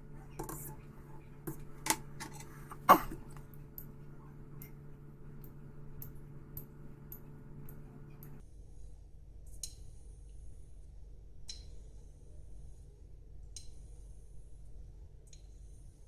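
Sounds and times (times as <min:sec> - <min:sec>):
razor honing on stone: 0:00.0 - 0:08.4.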